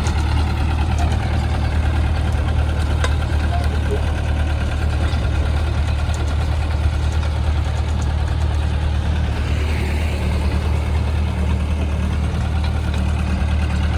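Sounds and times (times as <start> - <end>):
machine engine idling: 0.0 - 13.9.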